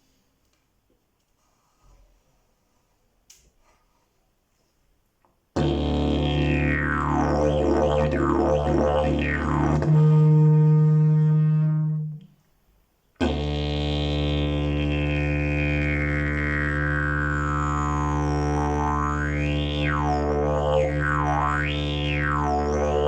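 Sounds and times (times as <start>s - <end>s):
didgeridoo drone: 5.6s - 12.2s, 13.2s - 23.0s.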